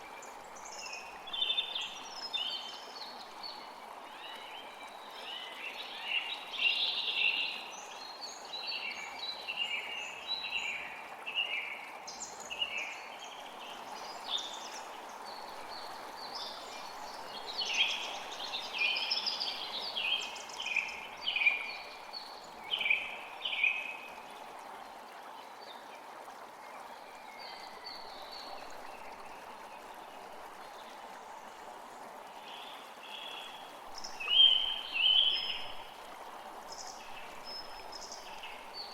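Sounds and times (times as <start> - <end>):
creek flowing: 0.0 - 38.9.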